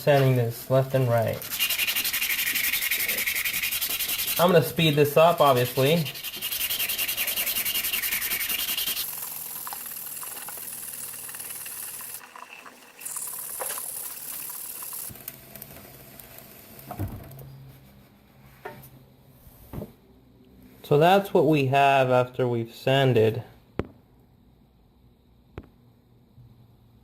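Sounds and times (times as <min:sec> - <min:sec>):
sandpaper rubbing on metal: 0:01.4 - 0:09.6.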